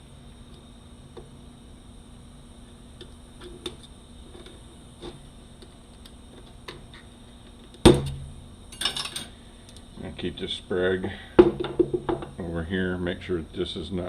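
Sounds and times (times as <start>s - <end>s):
metal clunk ringing: 7.9s - 9.3s
metal parts clattering: 8.8s - 9.3s.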